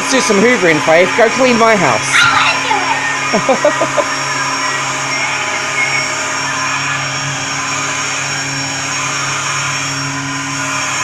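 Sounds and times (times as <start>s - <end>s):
vacuum cleaner running: 0.0s - 11.0s.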